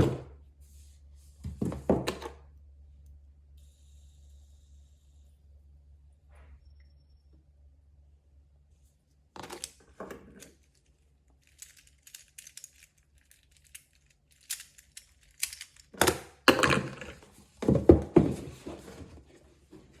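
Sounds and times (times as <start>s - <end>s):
plastic clicks: 11.4s - 16.6s.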